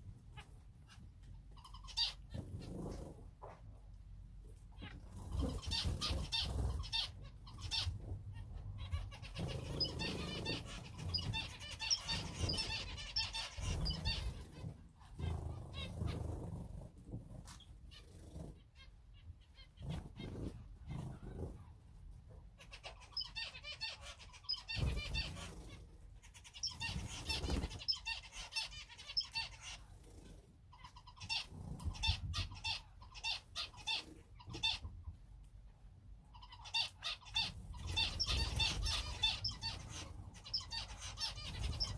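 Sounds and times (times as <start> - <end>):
cage birds chirping: 0.0 - 41.9
wings flapping: 26.7 - 28.0.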